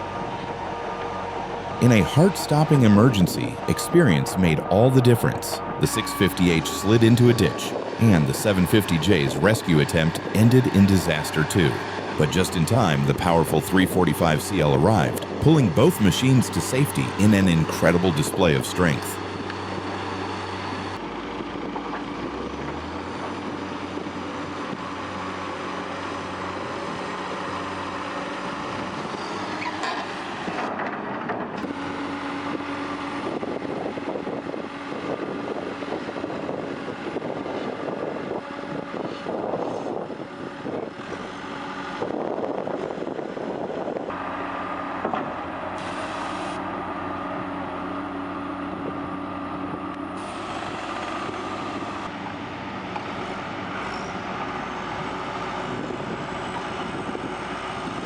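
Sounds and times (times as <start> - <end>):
diesel engines under load: 0.0 - 58.0.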